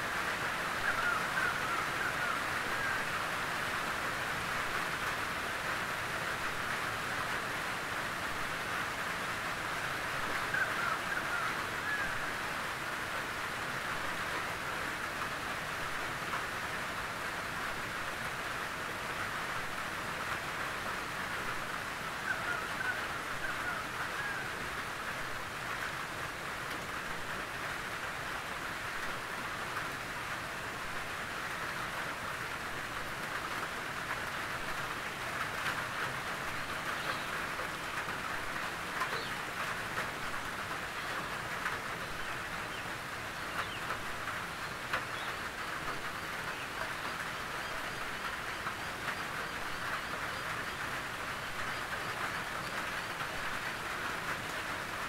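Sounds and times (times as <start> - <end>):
rain on a tin roof: 0.0 - 55.0.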